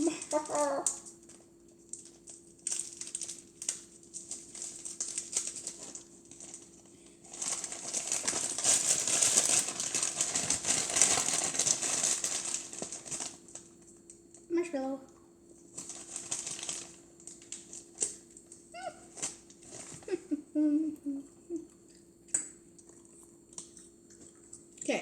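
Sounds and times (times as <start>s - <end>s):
plastic packaging crinkling: 0.0s - 14.2s, 15.6s - 20.2s.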